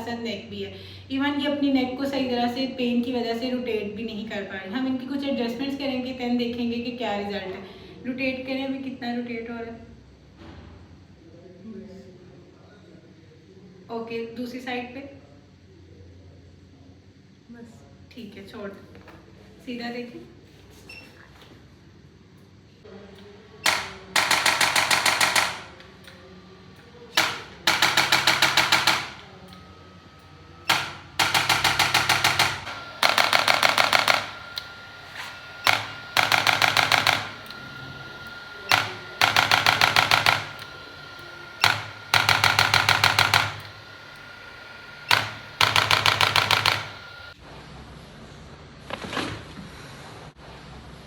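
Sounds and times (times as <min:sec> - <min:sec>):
mechanical instrument rapid clicking: 0:23.6 - 0:26.2, 0:27.1 - 0:29.6, 0:30.7 - 0:47.4.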